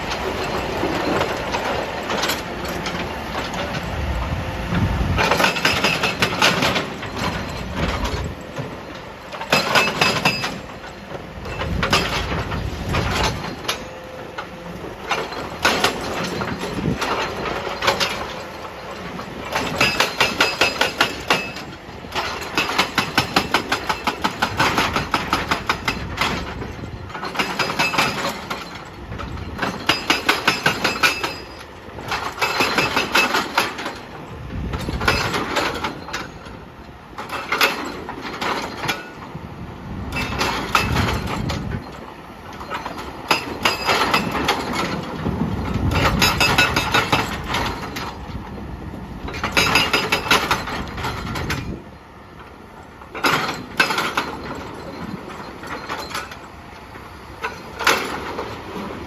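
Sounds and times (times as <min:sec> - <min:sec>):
excavator engine running: 0:00.0 - 0:59.0
hydraulic breaker hammering rock: 0:04.7 - 0:34.0, 0:40.1 - 0:41.9, 0:42.6 - 0:48.2, 0:49.3 - 0:51.8, 0:53.1 - 0:56.4.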